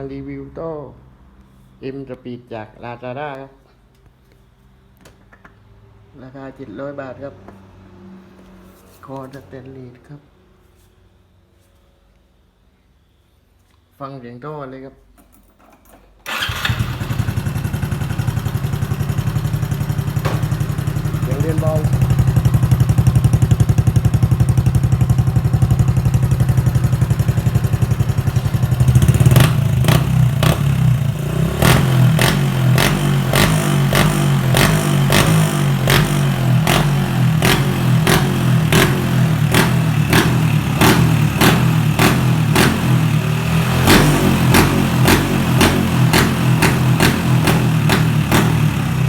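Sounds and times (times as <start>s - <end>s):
exhaust cracks: 16.3s - 49.0s
motorcycle engine idling: 16.3s - 49.0s.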